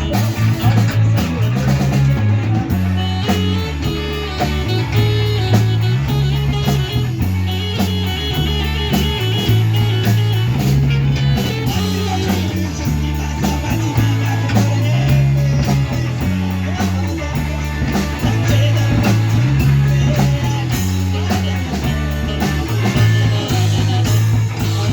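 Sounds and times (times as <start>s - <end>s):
bass line: 0.0s - 24.9s
drum beat: 0.0s - 24.9s
electric guitar: 0.0s - 24.9s.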